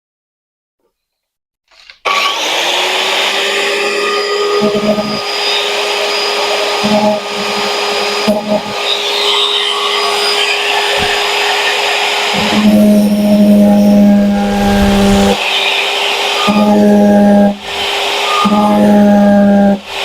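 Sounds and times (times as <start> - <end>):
small grinder cutting metal: 2.1 - 10.7.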